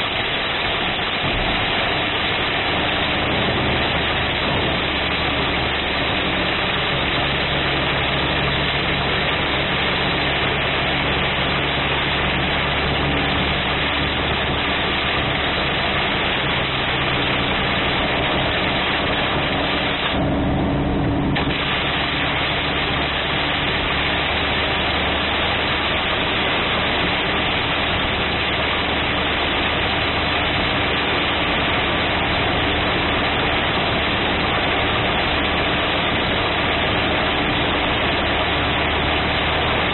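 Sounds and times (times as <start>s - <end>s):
car engine hum: 0.0s - 39.9s
heavy rain on car roof: 0.0s - 39.9s.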